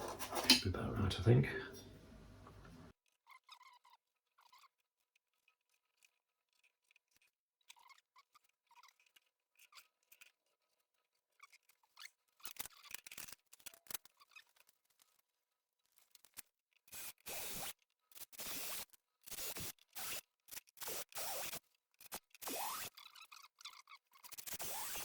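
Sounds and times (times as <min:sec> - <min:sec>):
small parts clicking and scraping: 0:04.3 - 0:25.0.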